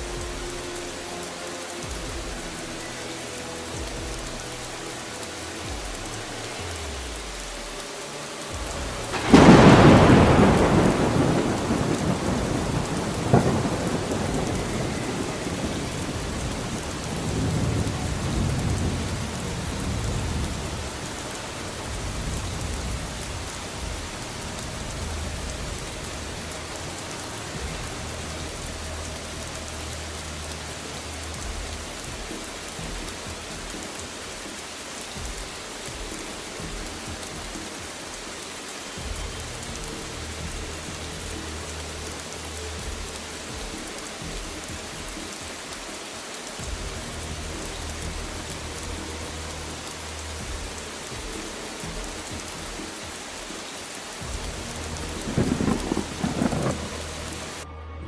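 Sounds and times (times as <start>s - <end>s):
steady rain: 0.0s - 58.0s
thunderclap and rumble: 8.6s - 38.1s, 54.2s - 57.7s.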